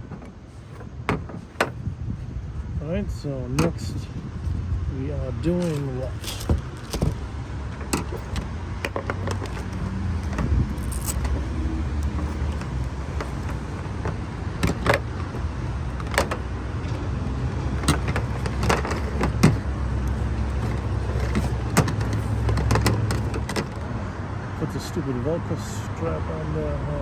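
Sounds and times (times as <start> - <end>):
steady low rumble: 0.0 - 24.2
parts and cable clicking: 5.5 - 23.9.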